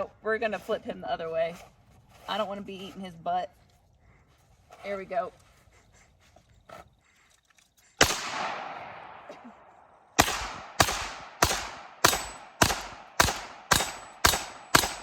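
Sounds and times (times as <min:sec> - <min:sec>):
pistol shots echoing: 0:08.0 - 0:09.3, 0:10.2 - 0:15.0.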